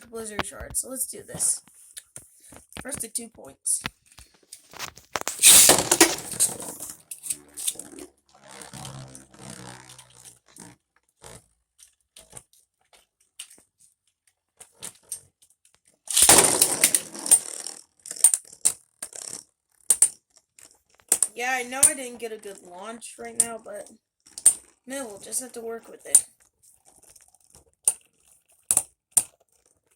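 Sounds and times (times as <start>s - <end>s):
spinning top launch whir: 5.1s - 11.4s, 16.1s - 22.6s
spinning tops clattering: 5.2s - 7.9s, 16.1s - 18.3s.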